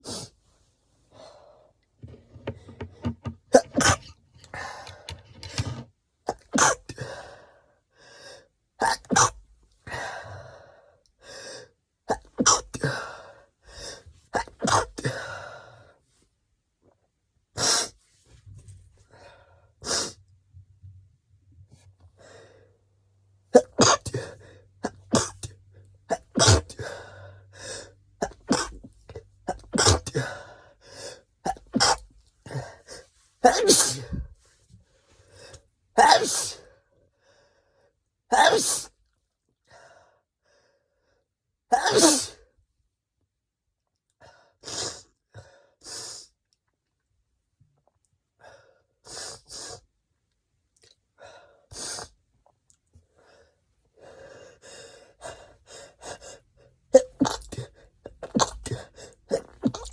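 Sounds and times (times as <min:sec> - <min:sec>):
person sneezing: 0:08.8 - 0:09.4, 0:29.5 - 0:30.4, 0:33.4 - 0:34.3, 0:36.0 - 0:36.6, 0:38.3 - 0:38.9, 0:41.7 - 0:42.4, 0:57.0 - 0:59.9.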